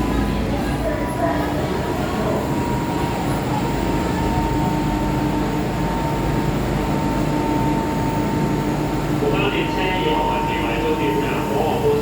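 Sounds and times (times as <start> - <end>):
train carriage hum and rumble: 0.0 - 12.0.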